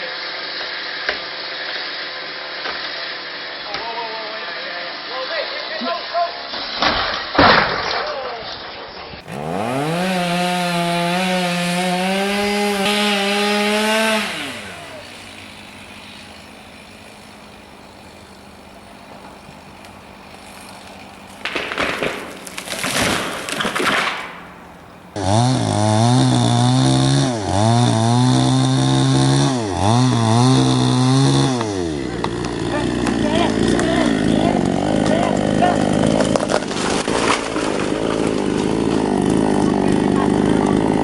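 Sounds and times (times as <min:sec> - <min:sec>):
chainsaw idling: 0:09.2 - 0:41.0
chainsaw revving: 0:09.2 - 0:41.0
loud crashing: 0:21.3 - 0:25.0.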